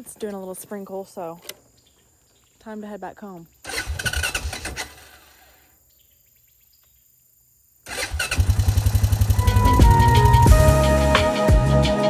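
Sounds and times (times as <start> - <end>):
small engine pulsing: 3.6 - 5.7, 7.9 - 10.9
music: 9.2 - 12.0.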